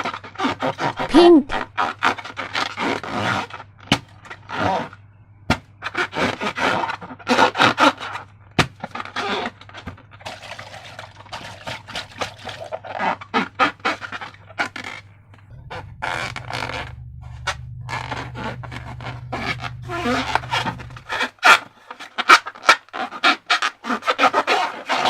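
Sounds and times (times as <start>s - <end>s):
slime squelching: 10.2s - 25.0s.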